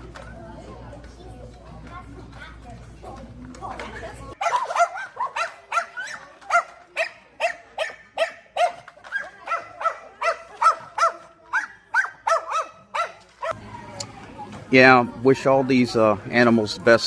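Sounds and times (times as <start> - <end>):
dog yapping: 4.4 - 13.6.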